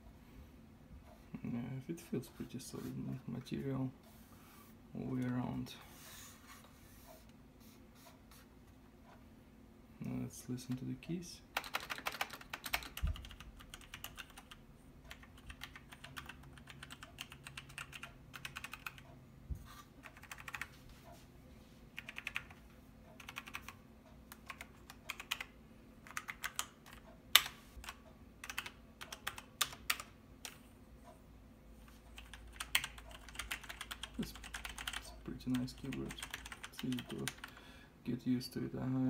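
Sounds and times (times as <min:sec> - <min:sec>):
mechanical keyboard typing: 0:11.6 - 0:19.0, 0:20.0 - 0:20.7, 0:22.0 - 0:22.6, 0:23.2 - 0:30.6, 0:32.1 - 0:37.6.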